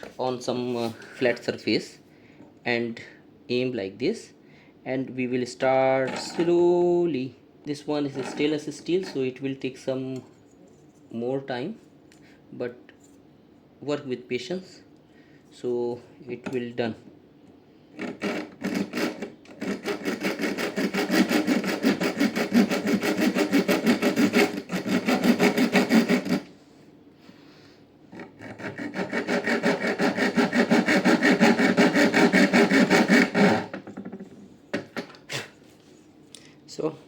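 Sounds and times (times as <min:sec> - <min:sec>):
hacksaw sawing metal screw: 0:06.0 - 0:06.6, 0:08.0 - 0:09.1, 0:18.0 - 0:26.5, 0:28.1 - 0:33.9.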